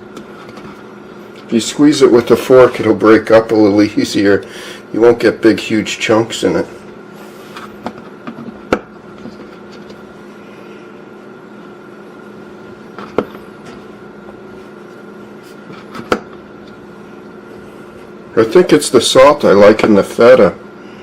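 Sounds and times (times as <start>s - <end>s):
steady hum: 0.0s - 21.0s.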